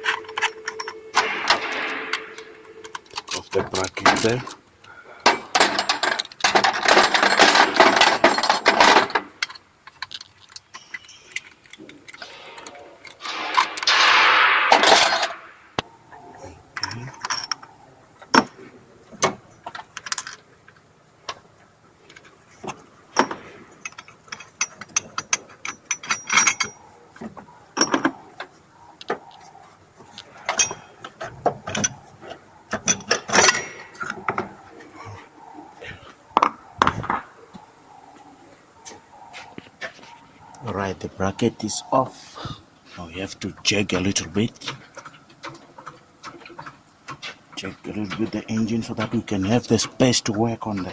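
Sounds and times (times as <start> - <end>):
metal tools clinking: 0.0 - 4.6, 5.2 - 15.6, 16.7 - 18.6, 19.2 - 20.8, 22.1 - 28.6, 30.0 - 34.8.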